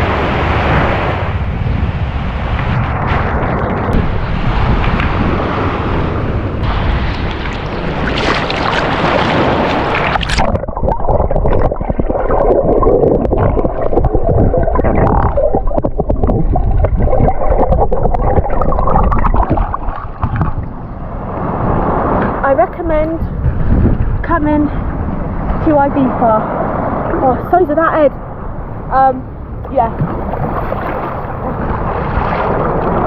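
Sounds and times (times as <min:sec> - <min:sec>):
sea water rushing: 0:00.0 - 0:23.8, 0:24.6 - 0:33.0
wind on microphone: 0:00.0 - 0:33.0
underwater bubbling gurgles: 0:06.6 - 0:20.9.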